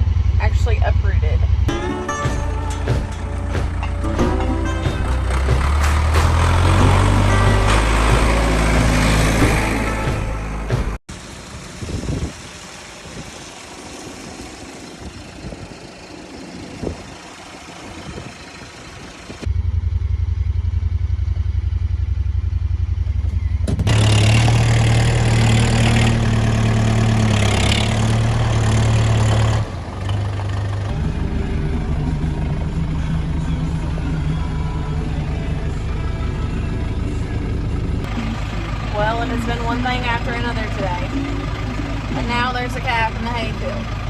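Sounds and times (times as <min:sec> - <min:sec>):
low outdoor rumble: 0:00.0 - 0:01.8, 0:02.4 - 0:44.0
motor engine running: 0:00.0 - 0:44.0
knocks: 0:23.3 - 0:24.5.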